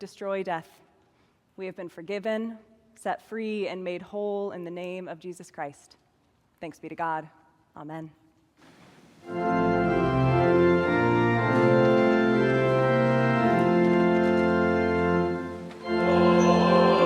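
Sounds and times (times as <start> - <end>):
church organ chords: 9.2 - 17.0
congregation singing: 9.3 - 17.0.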